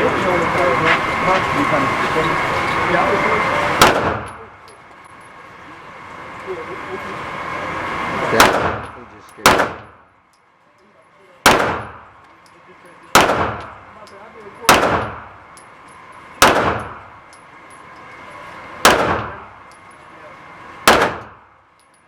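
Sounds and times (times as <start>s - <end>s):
gunshots: 3.8s - 4.3s, 8.4s - 8.8s, 9.4s - 10.0s, 11.4s - 12.0s, 13.1s - 13.8s, 14.7s - 15.3s, 16.4s - 17.0s, 18.8s - 19.4s, 20.8s - 21.4s.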